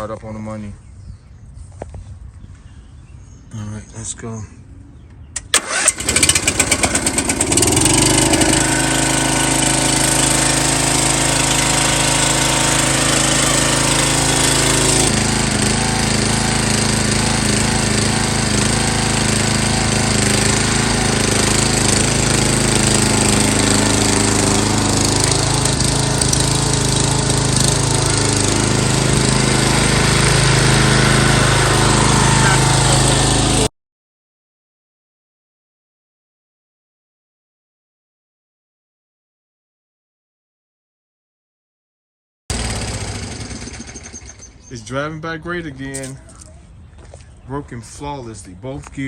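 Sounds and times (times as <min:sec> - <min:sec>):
mower engine starting and running: 0:05.4 - 0:33.7, 0:42.5 - 0:47.2.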